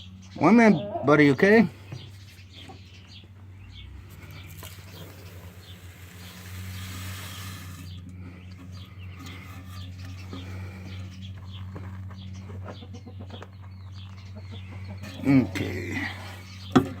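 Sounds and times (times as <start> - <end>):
steady low hum: 1.5 - 17.0
chickens clucking: 7.8 - 17.0.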